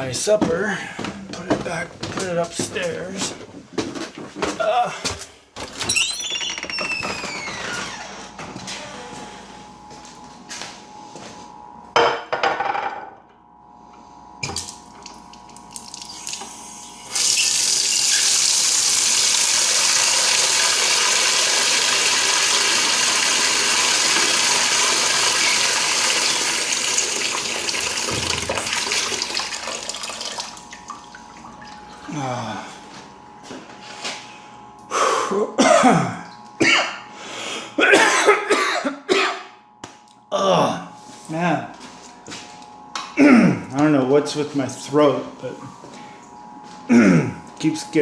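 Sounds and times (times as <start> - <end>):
tap running into a sink: 20.3 - 30.6.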